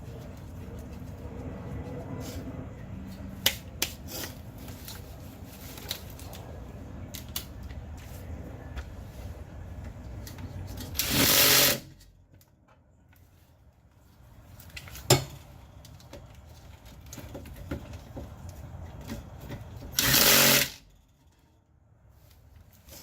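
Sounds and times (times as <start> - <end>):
power tool bursts: 11.0 - 11.9, 20.0 - 20.8.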